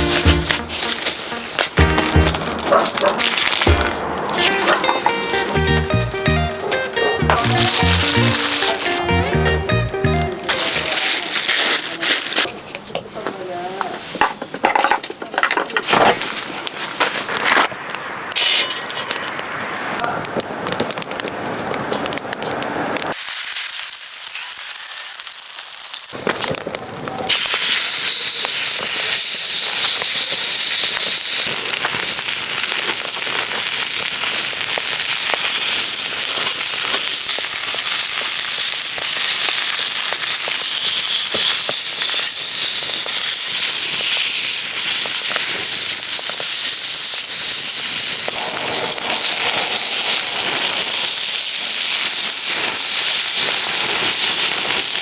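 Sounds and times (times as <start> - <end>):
beef sizzling in a hot pan: 23.1 - 26.2, 27.3 - 55.0.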